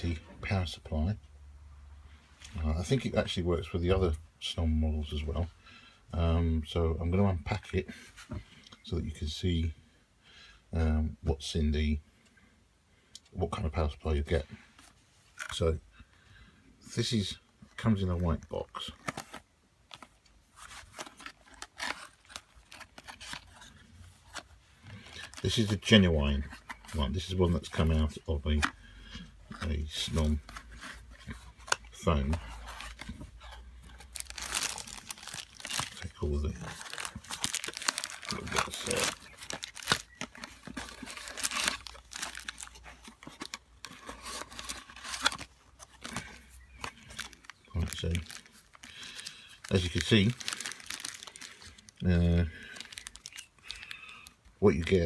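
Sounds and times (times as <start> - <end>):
packaging crinkling and rustling: 18.3 - 55.0
cardboard box being opened: 19.0 - 24.6, 29.5 - 48.8.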